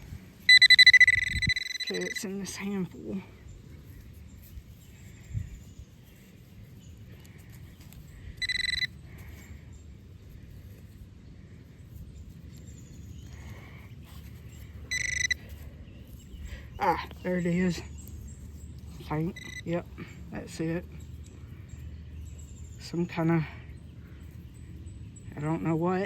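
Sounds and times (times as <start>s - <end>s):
metal detector beeping: 0.0s - 2.8s, 8.3s - 9.5s, 14.8s - 15.6s, 19.1s - 19.8s.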